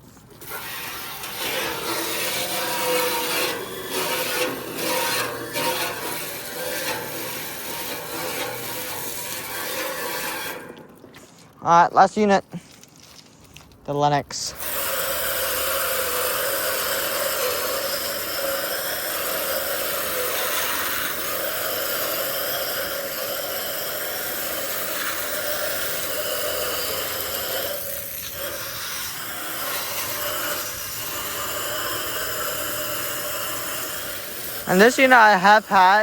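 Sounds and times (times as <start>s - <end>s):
hose spray nozzle hissing: 14.5s - 36.0s.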